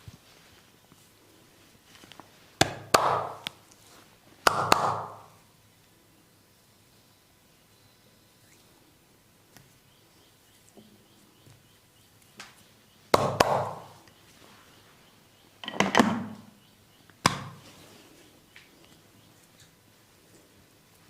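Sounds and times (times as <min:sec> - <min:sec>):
hand slapping oiled skin: 0:04.4 - 0:05.2.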